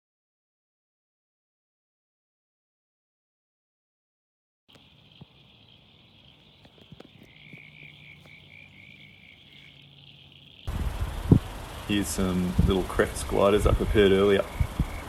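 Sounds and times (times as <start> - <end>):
pulsed frog call: 4.7 - 11.9, 14.0 - 15.0
frog chorus: 4.7 - 12.3, 13.4 - 15.0.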